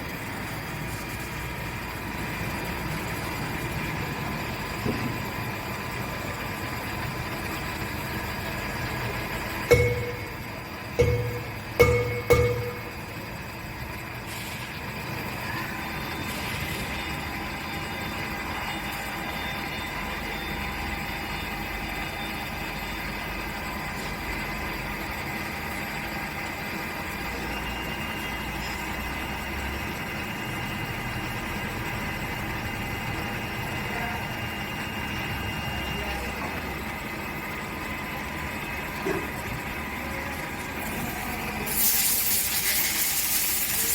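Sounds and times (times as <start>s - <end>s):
cnc machine whine: 0.0s - 41.6s
sharp metallic knock: 9.7s - 13.1s.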